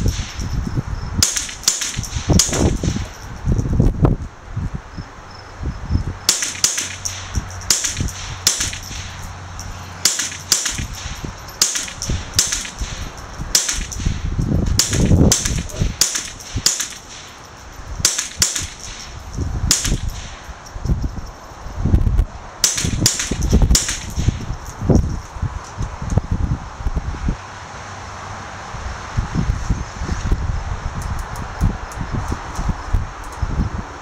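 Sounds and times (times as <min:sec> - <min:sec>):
rifle shots cracking: 0:01.2 - 0:03.2, 0:06.3 - 0:20.4, 0:22.6 - 0:24.5
low rumble: 0:05.6 - 0:25.6.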